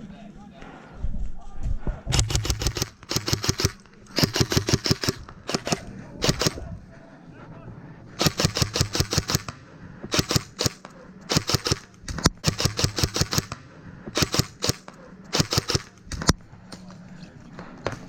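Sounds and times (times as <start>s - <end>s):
airsoft guns firing bursts: 2.1s - 6.7s, 8.2s - 16.4s.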